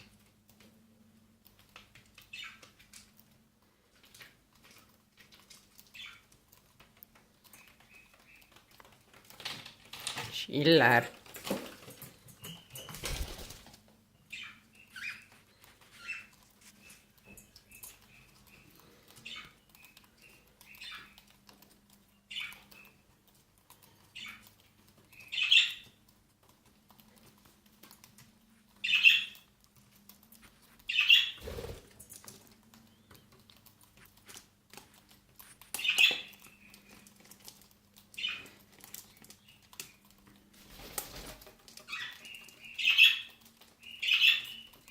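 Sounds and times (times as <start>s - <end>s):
birds rustling and pecking: 0.0s - 44.9s
cockatiels chirping: 14.3s - 17.0s, 25.1s - 26.0s, 28.8s - 29.4s, 30.9s - 31.7s, 41.9s - 44.9s.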